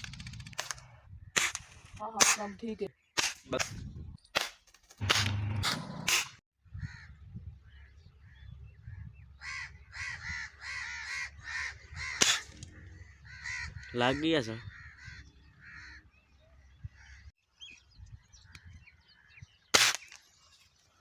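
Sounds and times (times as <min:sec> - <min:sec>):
sharp cracks: 0:00.0 - 0:02.6, 0:03.2 - 0:06.4, 0:12.1 - 0:12.8, 0:19.7 - 0:20.3
crows cawing: 0:06.8 - 0:07.2, 0:09.4 - 0:17.3.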